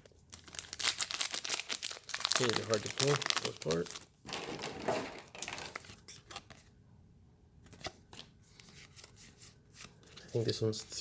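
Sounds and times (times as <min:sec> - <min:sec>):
foil wrapper tearing and crinkling: 0:00.3 - 0:05.9.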